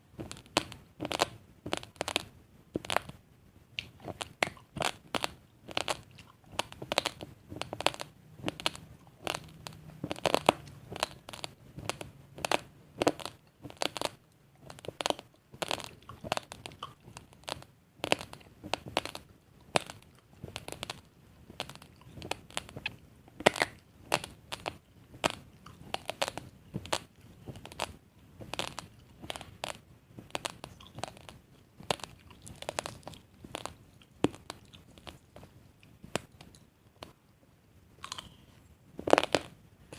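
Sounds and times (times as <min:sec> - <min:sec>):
rice grains crunching when chewed: 0:00.2 - 0:03.2, 0:03.8 - 0:36.6, 0:38.0 - 0:38.4, 0:39.0 - 0:39.5.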